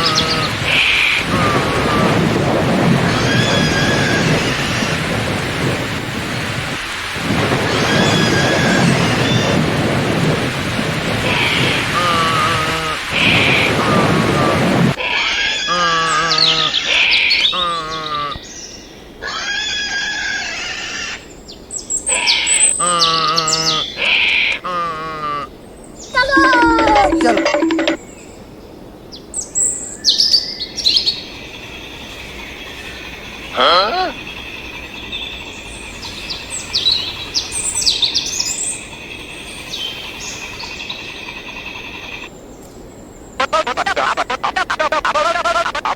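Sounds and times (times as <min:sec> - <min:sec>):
birds chirping and tweeting: 0:25.6 - 0:43.4
wavering many-toned bird call: 0:26.2 - 0:28.0.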